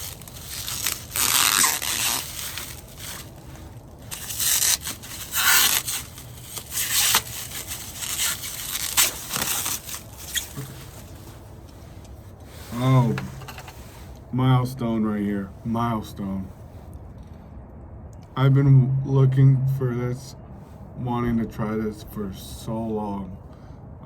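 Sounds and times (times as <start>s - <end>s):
bubble wrap crinkling: 0.0s - 11.7s.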